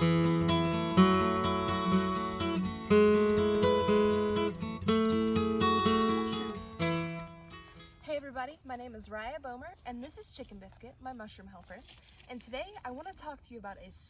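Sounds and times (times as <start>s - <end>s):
acoustic guitar picked and strummed: 0.0s - 10.0s.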